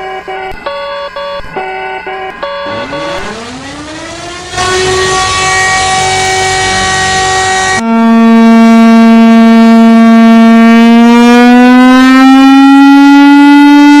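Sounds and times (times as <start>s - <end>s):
emergency siren winding up: 0.0s - 14.0s
multi-tone alert signal: 0.6s - 7.8s.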